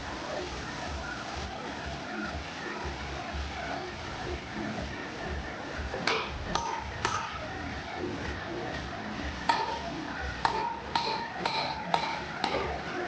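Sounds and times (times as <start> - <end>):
hammer striking metal on anvil: 6.1 - 7.4, 9.5 - 9.8, 10.4 - 12.7.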